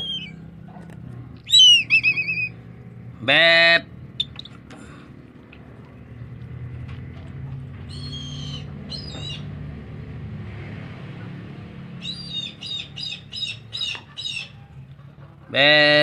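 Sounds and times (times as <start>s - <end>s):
eagle squealing calls: 0.0s - 0.4s, 1.5s - 2.6s, 7.9s - 9.5s, 12.0s - 14.7s.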